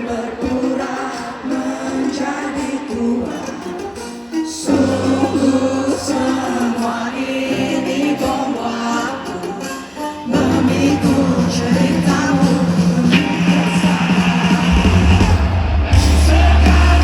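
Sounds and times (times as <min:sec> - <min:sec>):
live band music with singing: 0:00.0 - 0:17.0
bass guitar: 0:10.4 - 0:17.0.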